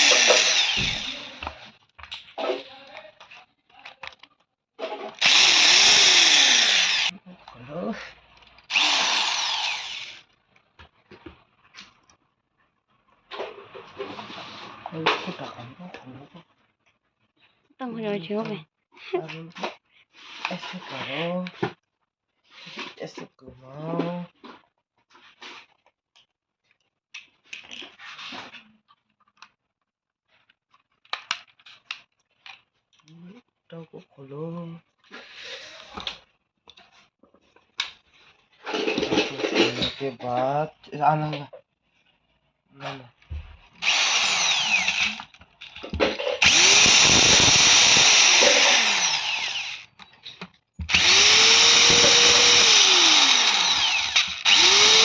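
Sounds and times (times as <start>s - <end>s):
angle grinder motor whining: 0.0s - 1.5s, 5.2s - 7.1s, 8.7s - 10.2s, 43.8s - 45.3s, 46.4s - 49.9s, 50.9s - 55.0s.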